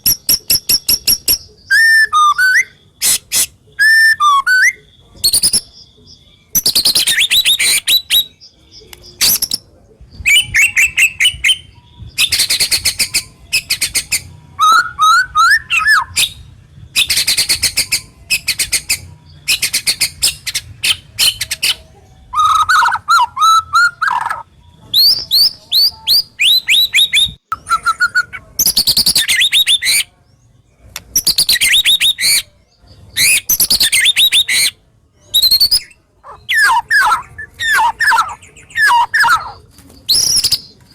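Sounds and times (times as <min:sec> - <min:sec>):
songbird singing trills and whistles: 0:00.0 - 0:40.9.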